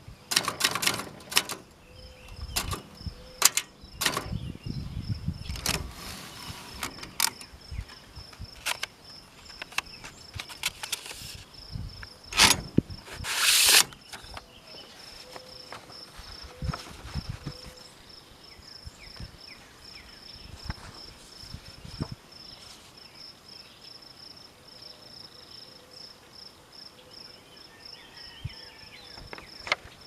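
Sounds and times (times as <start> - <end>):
metal table rattling: 0.3 - 1.7
typewriter carriage return: 0.3 - 1.7, 2.5 - 4.4, 5.5 - 7.5, 8.6 - 8.9, 9.5 - 11.4, 12.3 - 14.4
typewriter key strikes: 0.3 - 1.7, 2.5 - 4.4.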